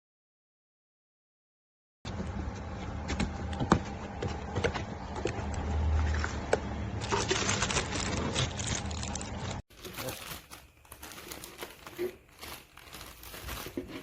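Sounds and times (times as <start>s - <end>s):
rustling and clatter: 7.0s - 14.0s.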